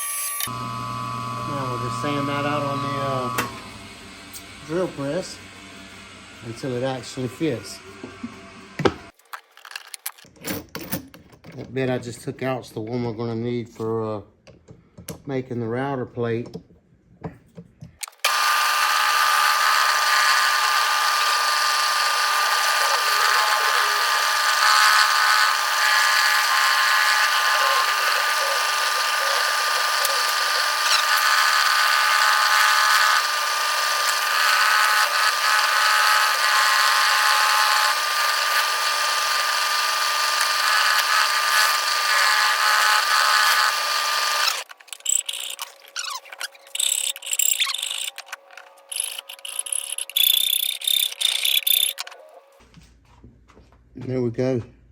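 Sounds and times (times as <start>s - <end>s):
drill press motor whine with grinding: 0.0s - 9.1s, 18.1s - 52.1s.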